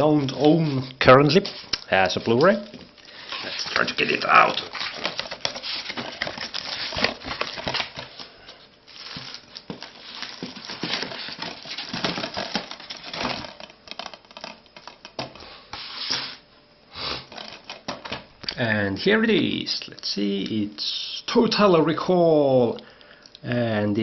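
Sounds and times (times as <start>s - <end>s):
packaging crinkling and scraping: 0.0s - 16.4s, 17.2s - 18.3s.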